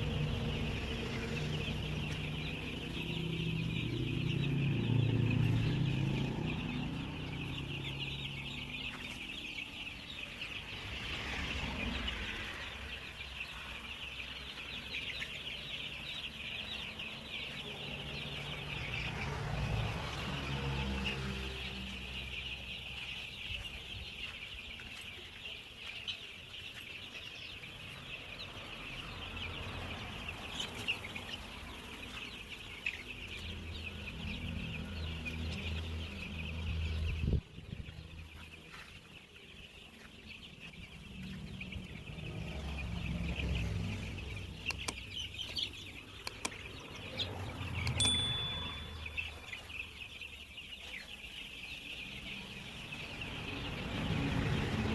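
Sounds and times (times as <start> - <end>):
chicks peeping: 0.0 - 54.9.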